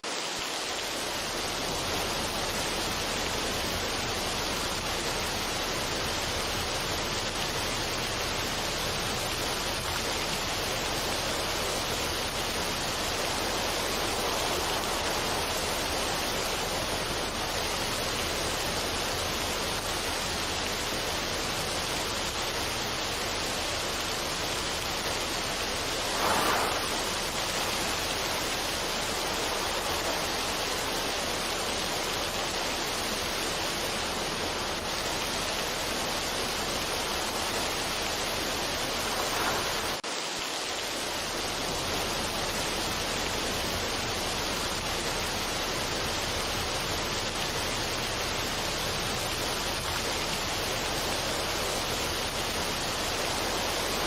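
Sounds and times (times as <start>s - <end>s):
steady rushing noise: 0.0s - 40.6s.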